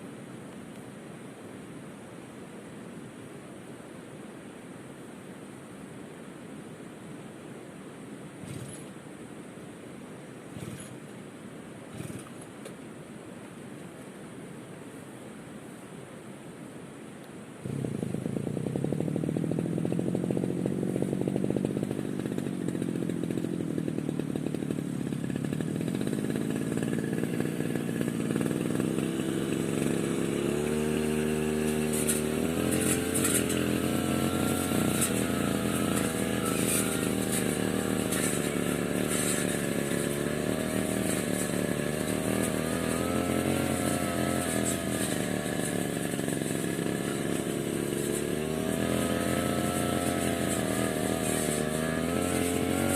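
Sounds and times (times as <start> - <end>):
brush cutter engine revving: 8.4 - 9.0, 10.5 - 11.1, 11.9 - 12.7, 17.6 - 52.9.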